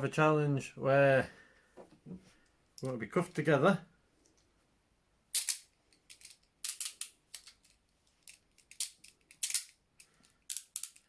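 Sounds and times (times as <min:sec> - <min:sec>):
handcuffs ratchet clicking: 0:05.4 - 0:11.0.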